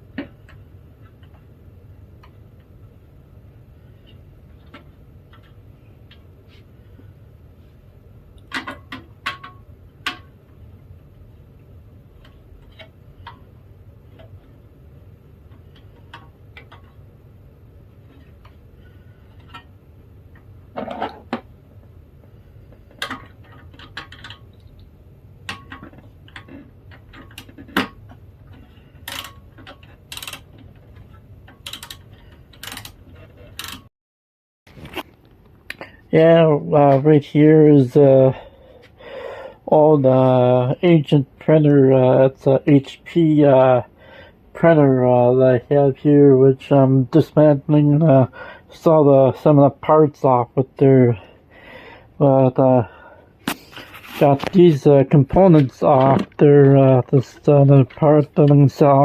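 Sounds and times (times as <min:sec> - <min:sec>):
steady low hum: 0:00.0 - 0:33.9, 0:34.7 - 0:59.0
printer parts clicking and knocking: 0:22.9 - 0:24.5, 0:25.5 - 0:33.9.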